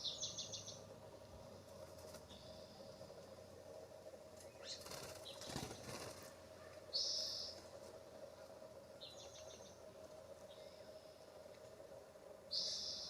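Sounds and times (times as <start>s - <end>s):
bird wing flaps: 4.8s - 6.4s
harsh high-pitched bird calls: 12.5s - 13.0s.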